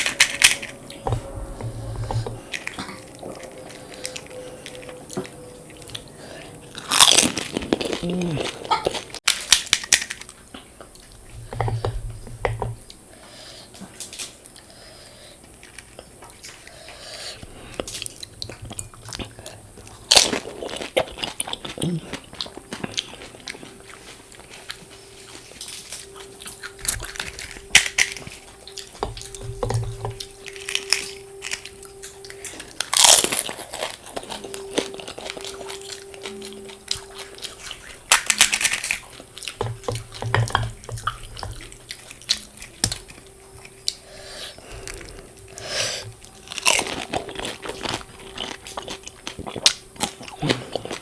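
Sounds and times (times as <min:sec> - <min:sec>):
low hum: 0:00.0 - 0:09.2, 0:21.8 - 0:51.0
wet chewing mouth sounds: 0:00.0 - 0:09.2, 0:10.7 - 0:51.0
crisp shells crunching: 0:00.0 - 0:10.6, 0:17.7 - 0:51.0.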